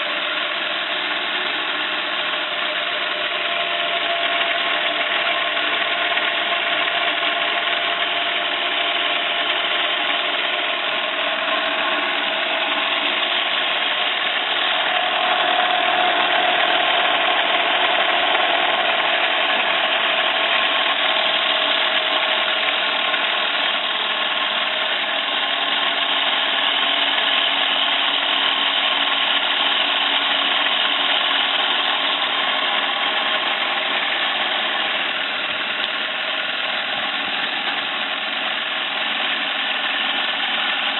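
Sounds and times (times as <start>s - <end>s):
model steam engine running: 0.0s - 40.9s.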